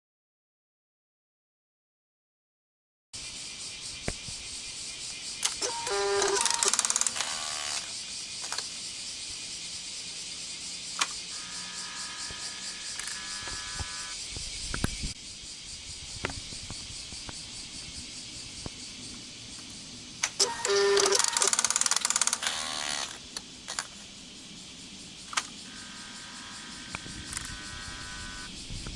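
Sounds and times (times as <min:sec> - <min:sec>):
steady hiss: 0:03.2 - 0:28.9
servo motor buzzing grind: 0:05.4 - 0:08.0, 0:11.3 - 0:14.2, 0:20.4 - 0:23.9, 0:25.7 - 0:28.5.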